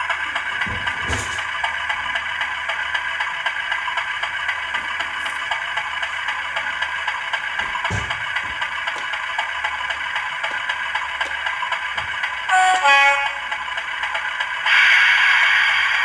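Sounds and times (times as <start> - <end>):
diesel locomotive engine running: 0.0 - 16.0
two-tone horn: 12.5 - 13.6.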